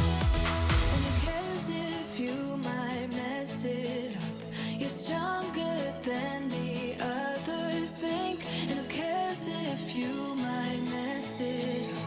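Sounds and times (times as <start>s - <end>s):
background pop music: 0.0s - 12.0s.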